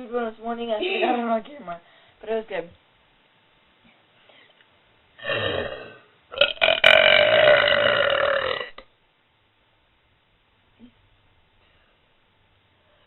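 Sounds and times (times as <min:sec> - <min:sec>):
person burping: 0:05.2 - 0:08.9.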